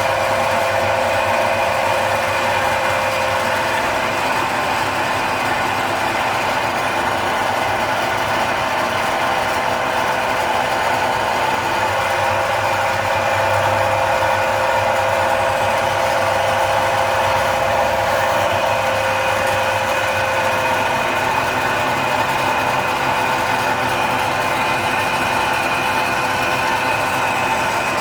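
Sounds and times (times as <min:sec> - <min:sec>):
machine droning hum: 0:00.0 - 0:28.0.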